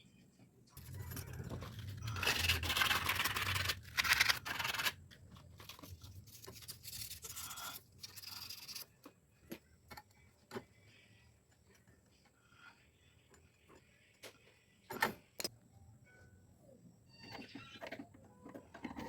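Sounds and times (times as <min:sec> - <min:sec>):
scraping and scratching: 0:00.8 - 0:09.2.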